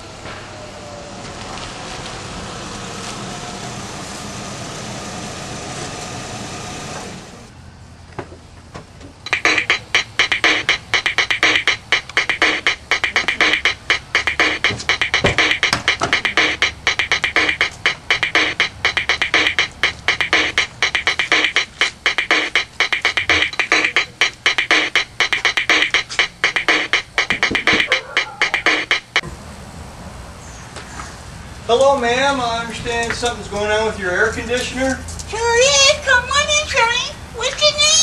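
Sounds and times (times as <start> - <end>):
electronic music with drum beat: 9.2 - 29.2
vehicle engine running: 9.2 - 29.6.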